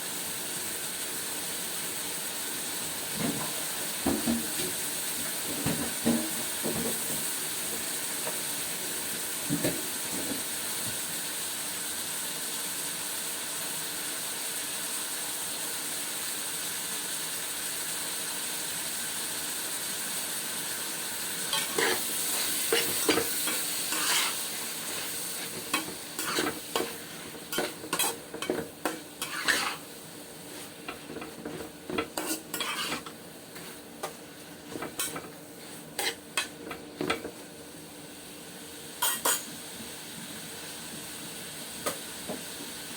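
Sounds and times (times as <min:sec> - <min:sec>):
meat sizzling in oil: 0:00.0 - 0:42.9
utensil scraping and knocking pan: 0:21.6 - 0:29.8, 0:30.6 - 0:35.4.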